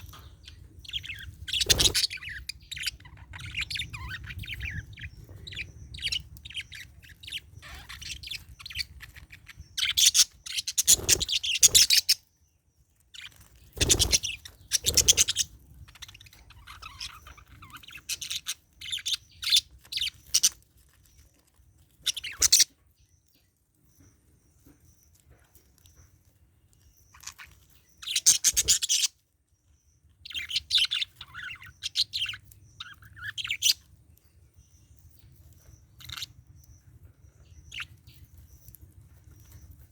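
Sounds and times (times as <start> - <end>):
budgerigars chirping: 0.0 - 12.3, 13.2 - 20.6, 22.0 - 22.8, 27.0 - 29.2, 30.2 - 33.9, 35.6 - 38.8.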